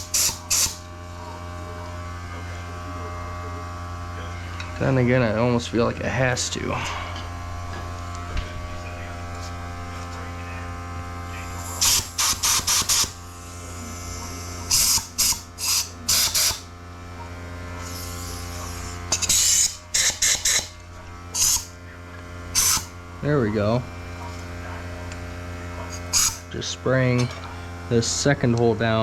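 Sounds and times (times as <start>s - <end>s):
compressed air blasts hissing: 0.0s - 0.9s, 11.6s - 13.2s, 13.9s - 16.7s, 17.8s - 21.8s, 22.5s - 23.0s
steady low hum: 0.0s - 29.0s.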